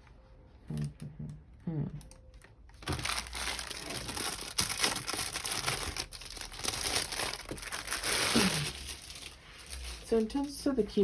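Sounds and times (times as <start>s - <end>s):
packaging rustling and crackling: 2.3s - 11.0s.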